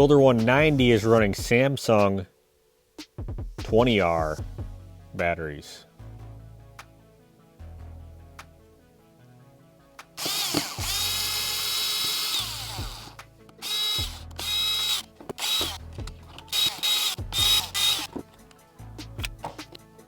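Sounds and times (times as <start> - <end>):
cordless drill motor whining: 10.2 - 18.3.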